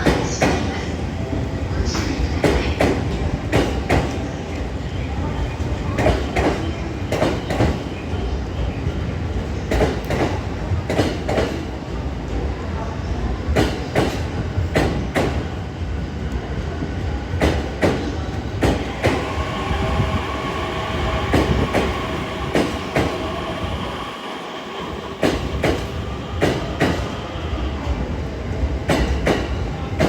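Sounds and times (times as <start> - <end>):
train whine: 17.1 - 30.0.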